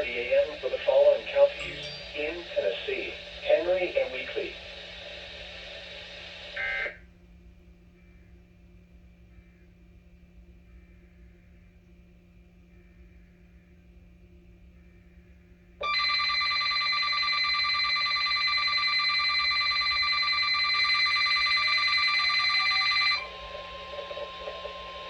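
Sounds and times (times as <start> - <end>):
steady warning alarm tone: 0.0 - 4.8, 5.8 - 7.0, 15.8 - 25.0
shrill trilling electronic alarm: 1.5 - 2.5, 15.8 - 25.0.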